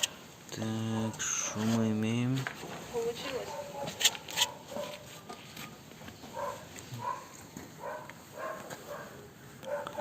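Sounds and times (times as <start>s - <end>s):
dog barking: 3.4s - 5.1s, 6.3s - 10.0s.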